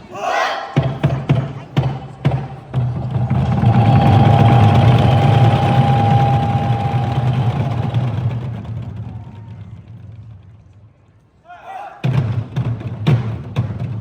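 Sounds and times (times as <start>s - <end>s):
drums in fast roll: 0.8s - 10.9s, 12.0s - 14.0s
steady ringing tone: 2.9s - 8.6s.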